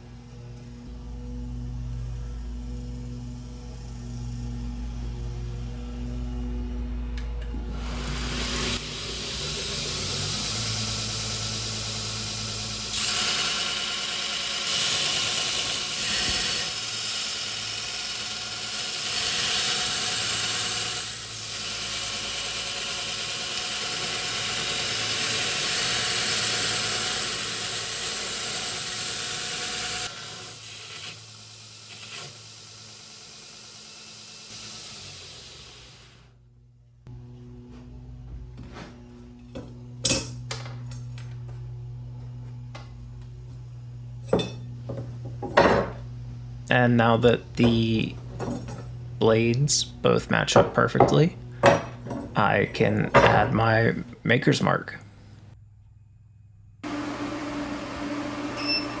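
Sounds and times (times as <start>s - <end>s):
belt grinder grinding steel: 7.7s - 36.2s.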